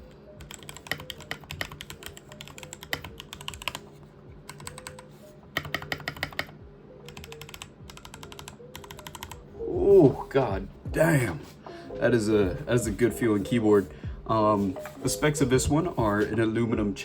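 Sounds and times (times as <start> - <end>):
mechanical keyboard typing: 0.4 - 3.8, 4.4 - 6.5, 7.1 - 9.4.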